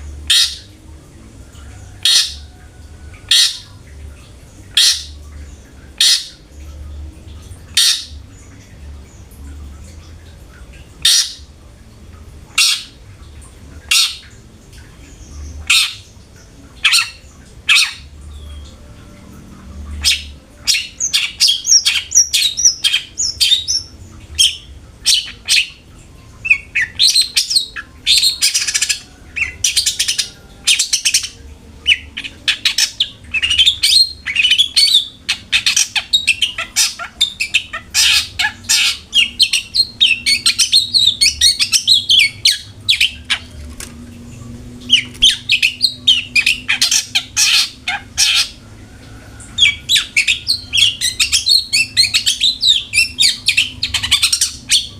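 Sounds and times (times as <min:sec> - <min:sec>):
bird chattering song: 0:00.3 - 0:00.7, 0:04.7 - 0:05.2, 0:07.7 - 0:08.2, 0:20.0 - 0:25.8.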